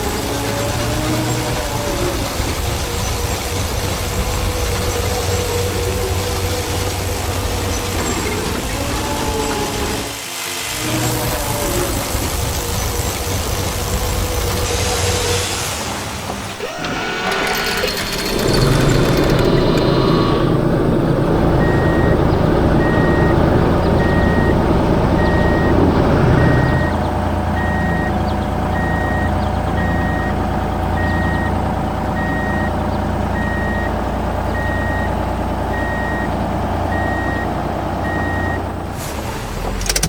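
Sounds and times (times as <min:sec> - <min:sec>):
engine rumble: 0:10.8 - 0:40.0
reversing alarm beeping: 0:21.5 - 0:25.8, 0:26.4 - 0:32.8, 0:33.4 - 0:38.7.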